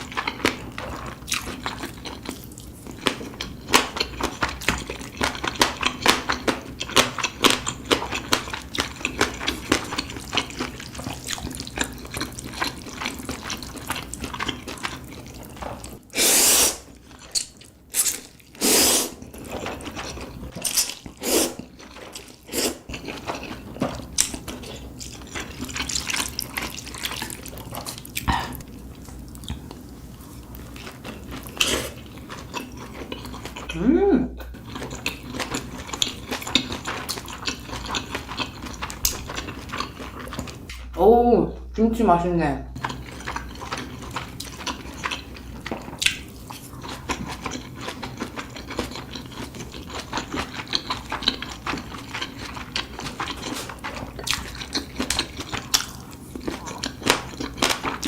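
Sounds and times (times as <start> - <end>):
slurping: 16.1 - 17.0, 18.0 - 19.5, 21.0 - 21.7
wet chewing and lip-smacking: 19.2 - 33.8, 34.4 - 40.8, 42.8 - 58.0.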